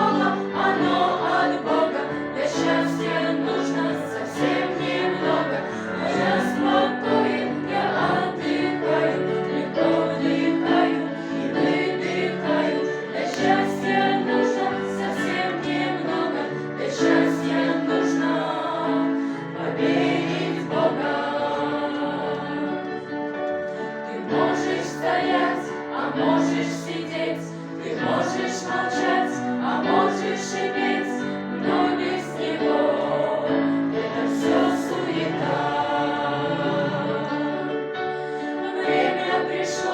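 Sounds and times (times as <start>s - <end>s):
choir singing: 0.0s - 39.9s.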